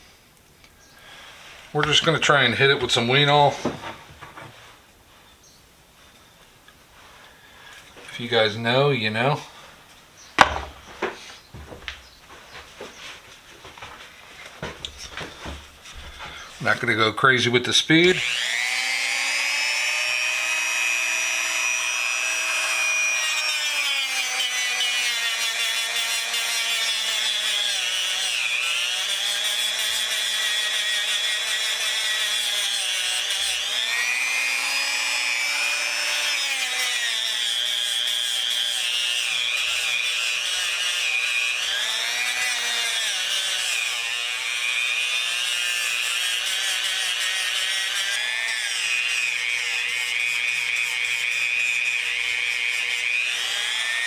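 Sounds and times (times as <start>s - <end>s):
power tool motor whine: 10.4s - 12.0s, 18.0s - 54.0s.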